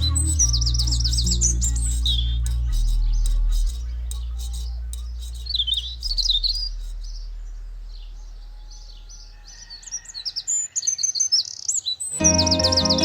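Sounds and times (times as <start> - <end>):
low bass note of music: 0.0 - 4.1, 12.2 - 13.0
small birds chirping: 0.0 - 13.0.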